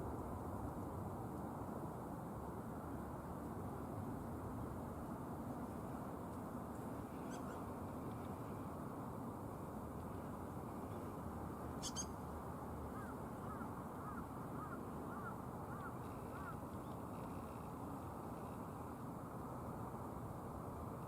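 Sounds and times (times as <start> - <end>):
short arching bird calls: 7.3 - 7.6, 11.8 - 12.2
sharp high bird call: 11.8 - 12.2.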